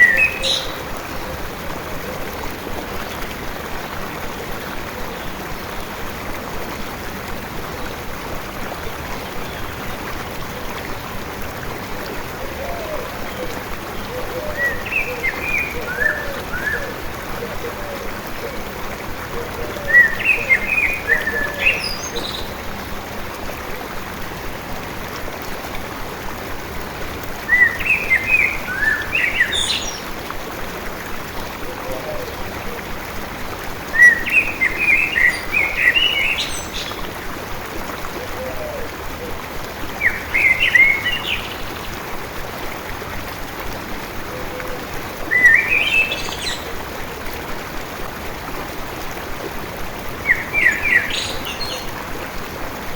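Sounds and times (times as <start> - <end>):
songbird twittering: 0.0 - 0.8
stream flowing: 0.0 - 52.9.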